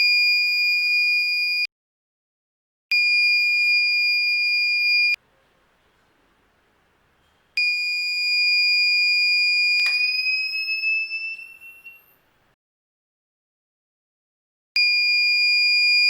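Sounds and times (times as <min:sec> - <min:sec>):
click: 0:09.8 - 0:10.0.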